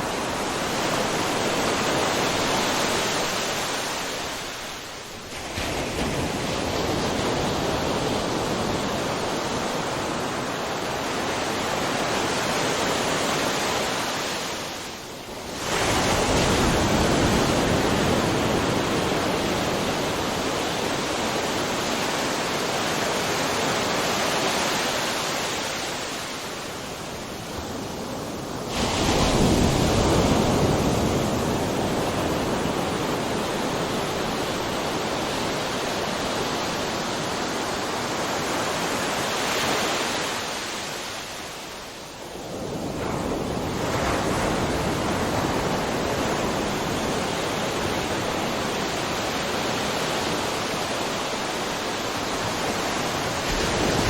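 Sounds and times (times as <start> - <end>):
waves breaking: 0.0 - 54.0
wave crashing: 28.0 - 41.8.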